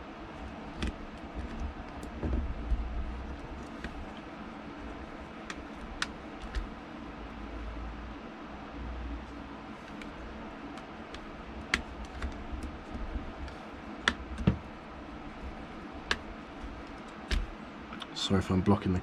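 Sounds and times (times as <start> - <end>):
low steady hum: 0.0 - 19.0
screwdriver clicks and taps: 0.7 - 2.4, 5.4 - 6.7, 10.8 - 14.6, 16.8 - 17.5.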